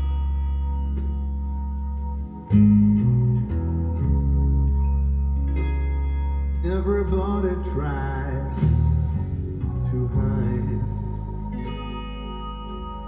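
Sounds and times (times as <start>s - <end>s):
instrumental music with deep bass: 0.0s - 13.0s.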